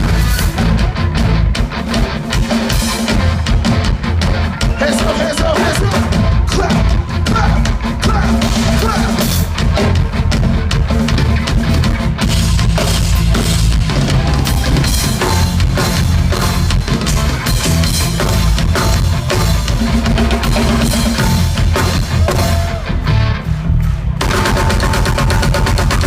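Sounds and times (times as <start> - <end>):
heavy drum beat and bass: 0.0 - 26.0
live concert music: 0.0 - 26.0.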